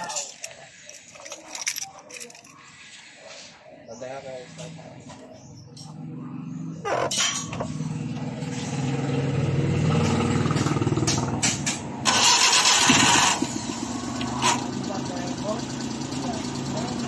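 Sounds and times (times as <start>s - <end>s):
engine cranking and starting: 12.0s - 15.3s.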